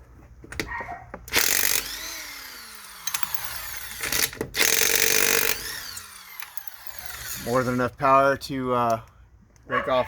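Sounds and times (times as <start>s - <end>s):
impact wrench hammering: 1.3s - 7.5s.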